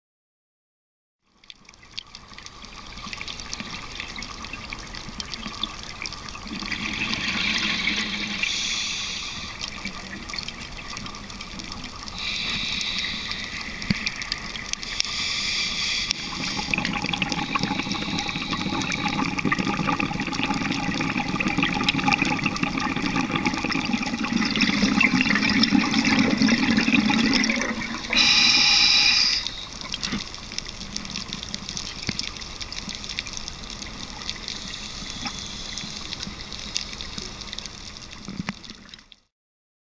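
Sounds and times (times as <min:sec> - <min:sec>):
diver's bubbles gurgling: 0:02.5 - 0:15.1, 0:16.1 - 0:39.1
watery hiss: 0:06.5 - 0:10.2, 0:11.9 - 0:30.3, 0:34.3 - 0:37.9.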